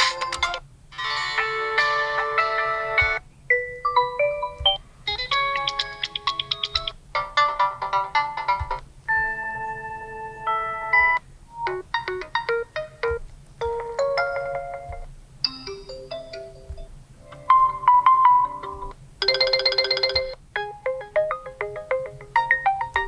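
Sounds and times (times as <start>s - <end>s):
phone ringtone melodies: 0.0s - 23.0s.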